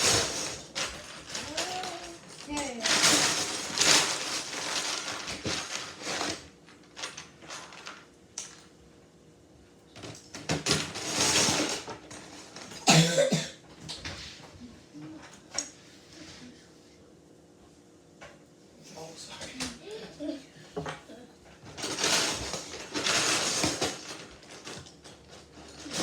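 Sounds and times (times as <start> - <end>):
short cough-like vocal sound: 12.9 - 13.6.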